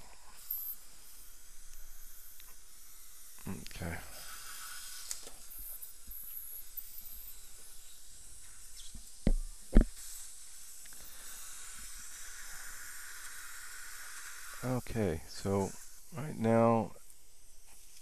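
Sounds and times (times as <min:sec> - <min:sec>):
dental equipment hissing: 0:00.0 - 0:18.0.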